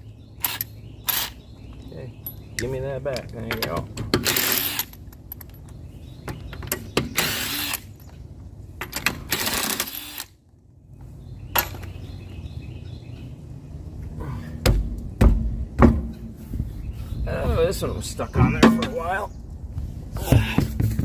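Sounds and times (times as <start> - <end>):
heavy thuds on wheel: 14.6 - 16.6, 20.2 - 21.0.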